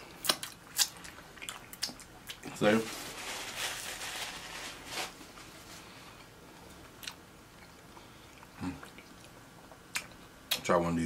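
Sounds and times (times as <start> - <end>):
person chewing food: 0.0 - 2.5, 6.1 - 10.3.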